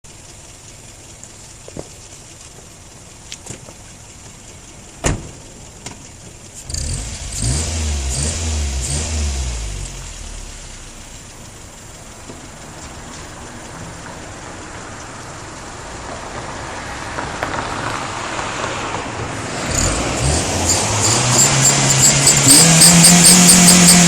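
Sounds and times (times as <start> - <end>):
car engine idling and revving: 0.1 - 24.0
sharp clicks: 19.8 - 24.0.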